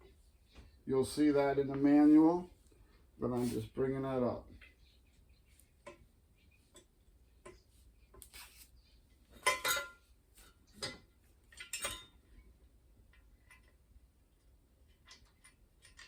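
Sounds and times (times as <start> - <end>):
metal hardware clinking: 9.4 - 10.0.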